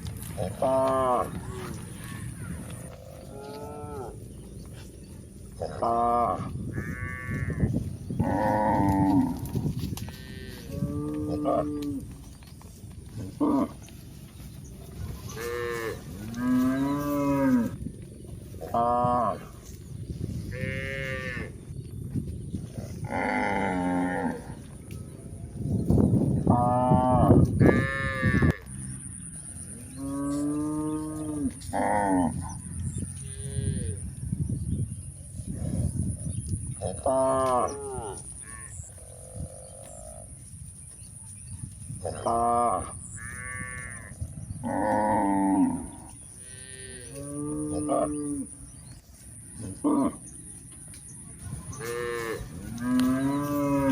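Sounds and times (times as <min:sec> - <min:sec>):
cows mooing: 0:00.2 - 0:04.2, 0:05.6 - 0:12.1, 0:13.2 - 0:13.8, 0:15.2 - 0:17.8, 0:20.5 - 0:21.6, 0:23.0 - 0:24.6, 0:26.5 - 0:28.9, 0:29.9 - 0:34.0, 0:36.8 - 0:40.3, 0:42.1 - 0:48.8, 0:49.6 - 0:50.3, 0:51.6 - 0:53.9
cattle mooing: 0:00.3 - 0:04.2, 0:05.6 - 0:12.0, 0:51.8 - 0:53.9
rustling noise: 0:06.8 - 0:18.8.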